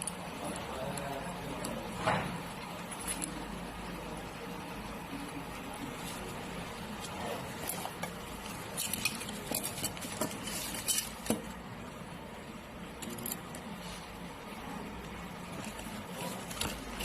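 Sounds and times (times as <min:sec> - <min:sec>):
small metal parts clinking: 0:02.8 - 0:03.5, 0:07.6 - 0:11.4, 0:13.0 - 0:13.6.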